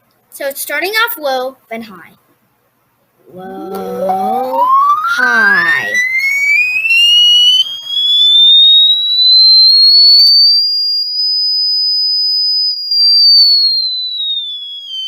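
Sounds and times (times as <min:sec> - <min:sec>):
electronic tone sweeping upward: 0:03.3 - 0:09.6.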